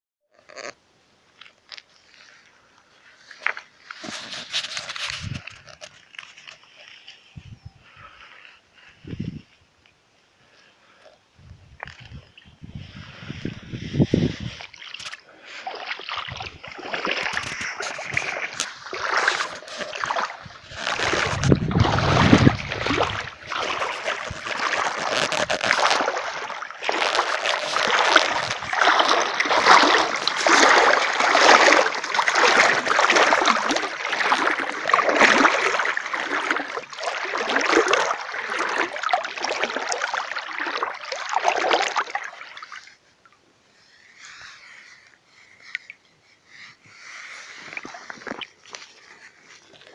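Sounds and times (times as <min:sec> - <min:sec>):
water splashing and sloshing: 0:00.4 - 0:07.4, 0:11.0 - 0:49.9
heavy low splash: 0:21.0 - 0:24.8.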